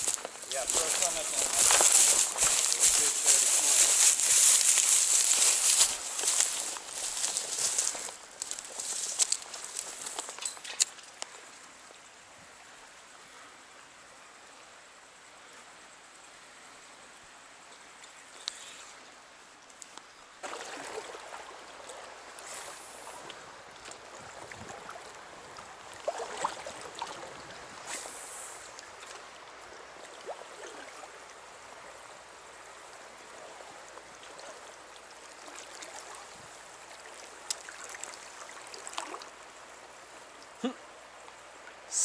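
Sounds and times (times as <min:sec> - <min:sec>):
stream gurgling over rocks: 0:00.0 - 0:15.2, 0:19.0 - 0:42.0
water splashes: 0:20.4 - 0:40.7.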